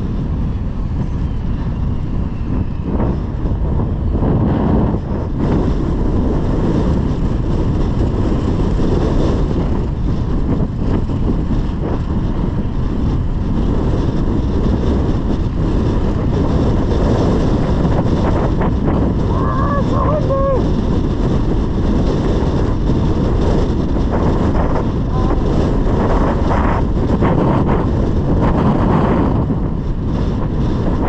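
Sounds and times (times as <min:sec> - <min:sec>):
wind buffeting microphone: 0:00.0 - 0:31.0
short pitched voice-like sound: 0:19.3 - 0:20.6, 0:25.1 - 0:25.5.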